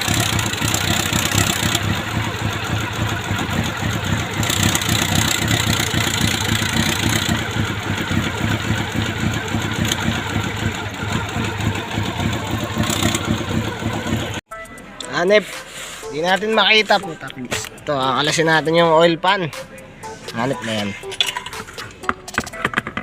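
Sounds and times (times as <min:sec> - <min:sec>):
engine rattling: 0:00.0 - 0:14.4
motorcycle engine idling: 0:00.0 - 0:14.4.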